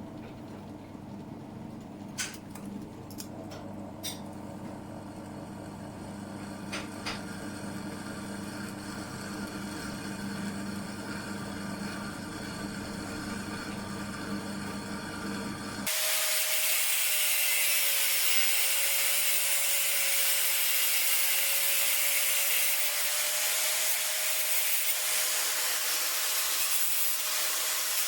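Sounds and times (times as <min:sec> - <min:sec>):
machine hum: 0:00.0 - 0:15.9.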